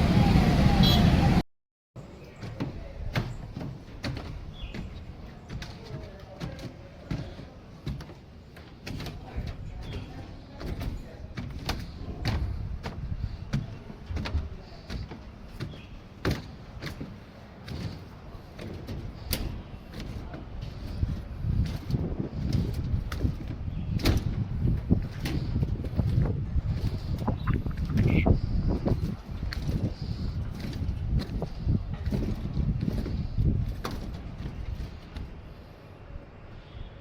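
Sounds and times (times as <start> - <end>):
steady low rumble: 20.4 - 35.8.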